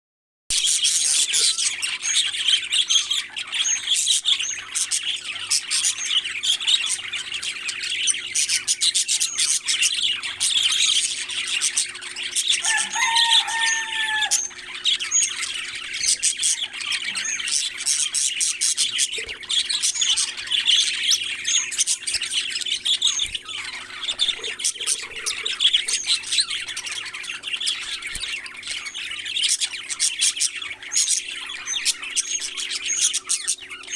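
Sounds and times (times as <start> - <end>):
parrots chattering: 0.5 - 33.9
whistled bird call: 12.6 - 15.3.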